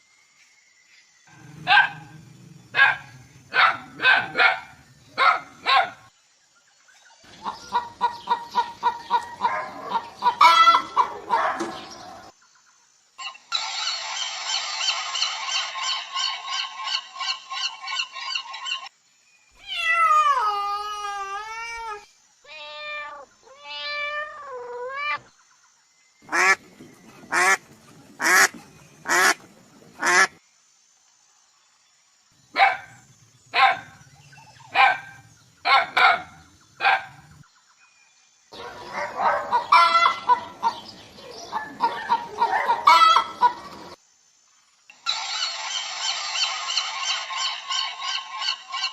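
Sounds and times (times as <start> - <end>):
animal calls: 38.6 - 44.0, 45.0 - 48.9.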